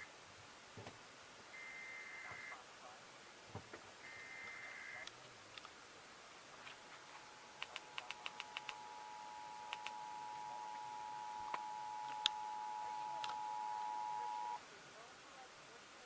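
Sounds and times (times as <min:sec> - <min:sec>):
sharp clicks: 0:07.6 - 0:08.9, 0:09.6 - 0:10.1, 0:11.4 - 0:12.5, 0:13.1 - 0:14.6.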